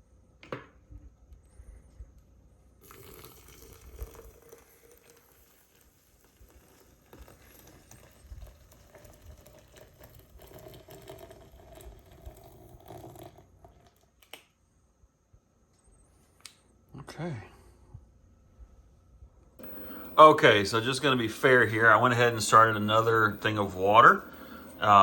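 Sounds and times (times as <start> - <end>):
water pouring into a press: 2.8 - 14.0, 19.6 - 25.0.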